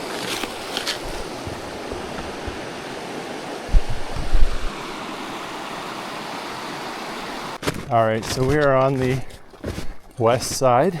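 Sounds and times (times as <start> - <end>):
river water rushing: 0.0 - 7.6.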